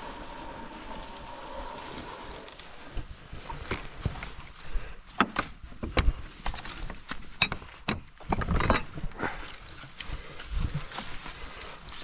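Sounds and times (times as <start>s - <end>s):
low rumble: 0.0s - 3.4s.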